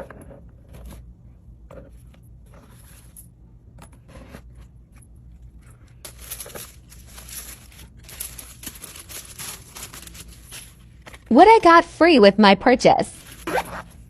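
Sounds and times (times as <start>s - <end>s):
packaging rustling and crinkling: 6.1s - 11.3s.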